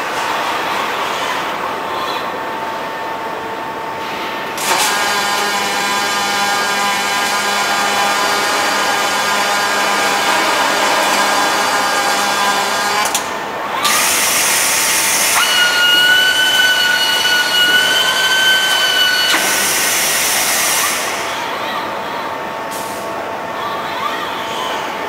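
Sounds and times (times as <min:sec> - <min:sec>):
machinery humming with whine: 0:00.0 - 0:25.0
loud hiss: 0:13.9 - 0:21.4
high whistle: 0:15.3 - 0:20.1.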